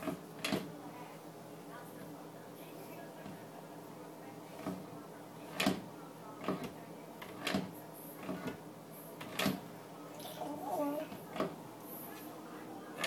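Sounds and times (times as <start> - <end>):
baby making mouth noises: 10.2 - 11.1.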